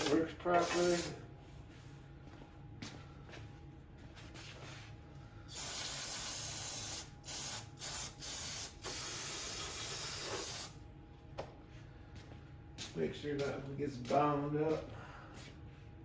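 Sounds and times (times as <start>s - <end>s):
aerosol spray hissing: 0.0s - 1.2s, 5.5s - 10.8s.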